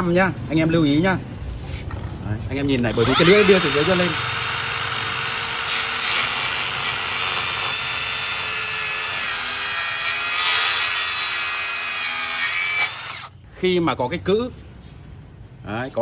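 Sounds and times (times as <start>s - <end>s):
circular saw cutting wood board: 2.8s - 13.3s.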